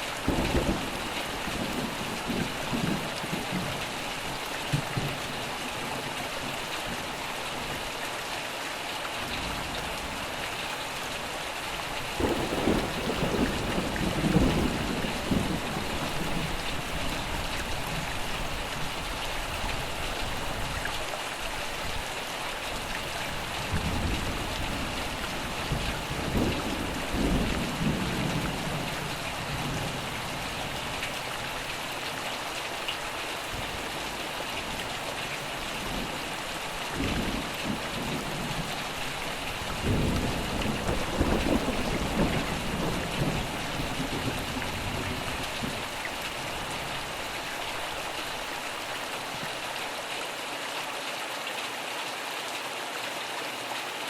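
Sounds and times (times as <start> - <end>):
steady rain falling: 0.0 - 54.0
low thunder rumbling: 0.3 - 5.4, 12.2 - 18.5, 23.3 - 31.6, 34.7 - 48.1.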